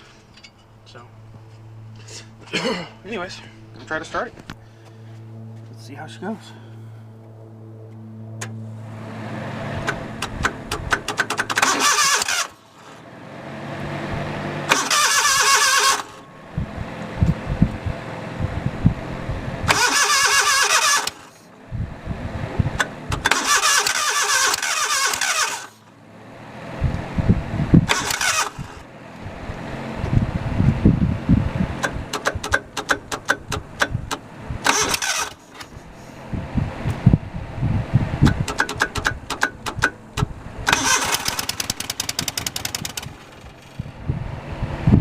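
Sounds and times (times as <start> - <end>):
engine firing roughly: 8.4 - 13.0, 13.6 - 21.4, 22.0 - 25.9, 26.8 - 28.9, 30.0 - 44.2
engine starter cranking: 9.8 - 13.0, 14.7 - 16.2, 19.7 - 21.4, 22.8 - 25.8, 27.9 - 28.8, 31.8 - 35.8, 38.2 - 43.8.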